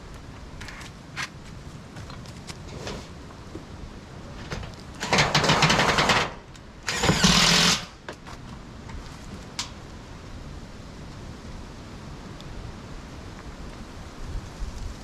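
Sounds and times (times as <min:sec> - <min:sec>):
small power tool running: 0:06.9 - 0:08.0.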